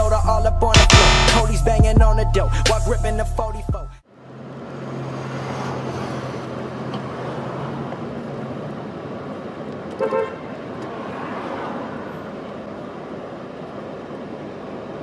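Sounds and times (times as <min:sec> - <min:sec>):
car horn toots: 0:00.8 - 0:01.6, 0:10.0 - 0:10.6
street traffic noise: 0:01.1 - 0:15.0.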